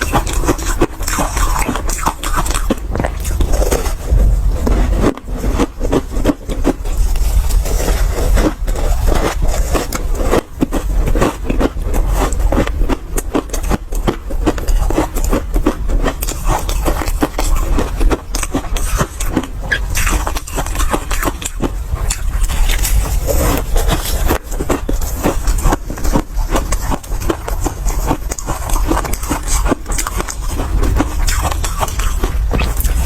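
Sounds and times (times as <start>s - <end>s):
ice crunching as it is chewed: 0.0s - 33.0s
low rumble: 2.6s - 9.9s, 30.0s - 33.0s.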